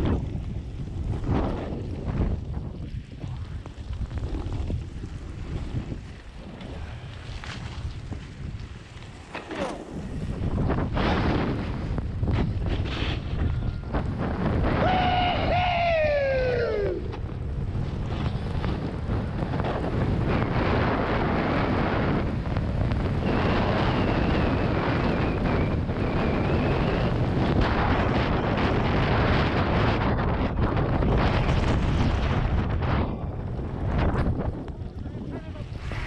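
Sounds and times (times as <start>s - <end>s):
wind noise on microphone: 0.0s - 36.0s.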